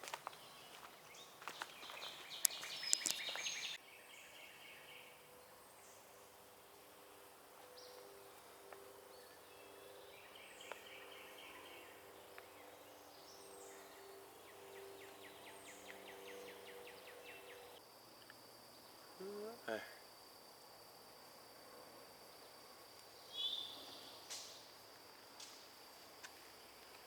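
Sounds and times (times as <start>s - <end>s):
birds chirping: 0.0s - 6.1s, 7.7s - 17.8s
faint low hum: 0.0s - 27.0s
soft clicks: 2.4s - 3.4s.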